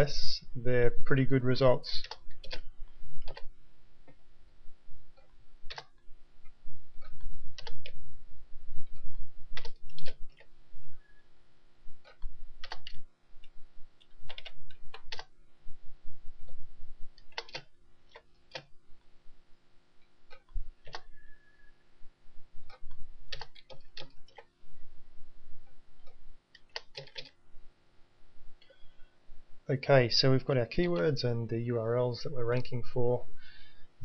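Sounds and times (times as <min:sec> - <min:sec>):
keyboard key clicks: 0:17.2 - 0:18.7.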